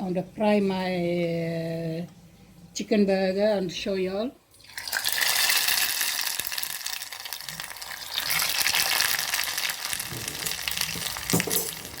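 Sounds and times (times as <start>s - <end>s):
patty sizzling in hot oil: 4.7s - 12.0s.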